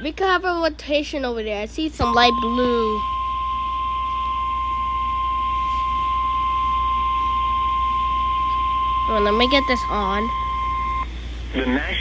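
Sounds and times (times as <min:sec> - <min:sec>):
steady alarm tone: 0:02.0 - 0:11.2
radio signal hiss: 0:05.2 - 0:12.0.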